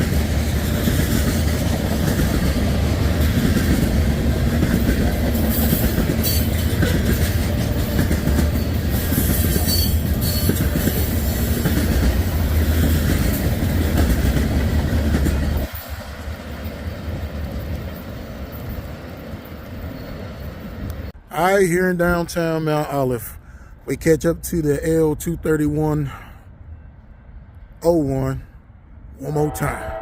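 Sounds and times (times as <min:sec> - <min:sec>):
wheels clacking over rail joints: 0:00.0 - 0:21.1
freight train rumbling past: 0:00.0 - 0:30.0.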